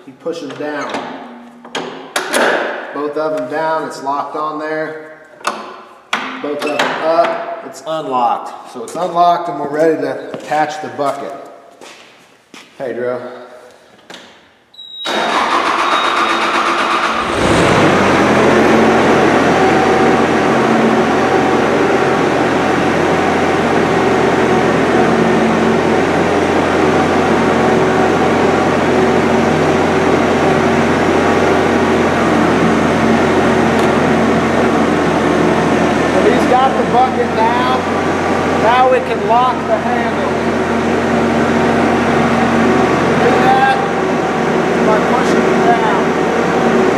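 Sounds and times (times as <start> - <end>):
diesel engine running: 15.1 - 46.9.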